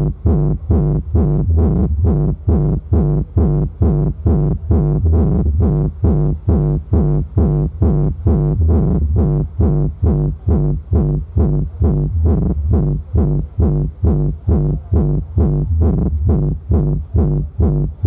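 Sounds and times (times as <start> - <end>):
electronic dance music with bass beat: 0.0 - 18.0.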